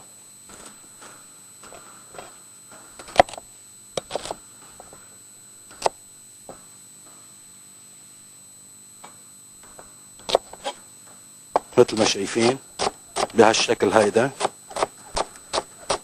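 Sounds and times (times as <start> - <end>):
knife cutting celery on board: 12.4 - 13.4, 14.3 - 16.0.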